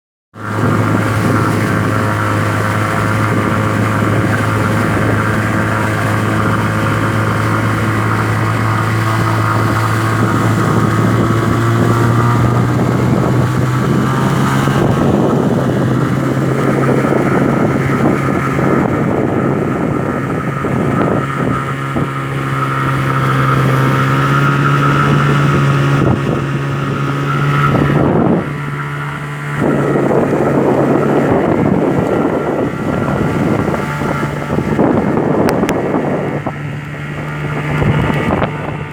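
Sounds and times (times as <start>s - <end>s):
boat engine running: 0.3s - 38.9s.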